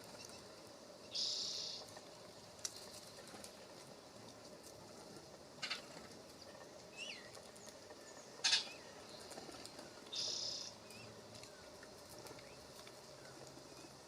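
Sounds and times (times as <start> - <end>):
harsh buzzy bird call: 10.1 - 10.8
thin bird chirps: 10.1 - 11.6.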